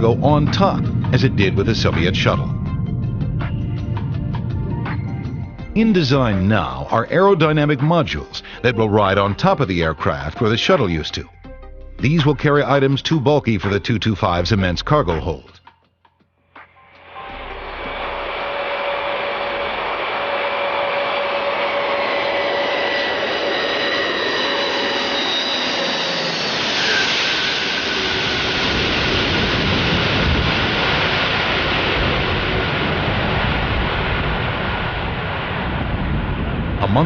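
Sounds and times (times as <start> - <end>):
aircraft passing by rumble: 0.0 - 7.6, 17.0 - 37.0
jet engines whining: 0.0 - 8.9, 17.0 - 37.0.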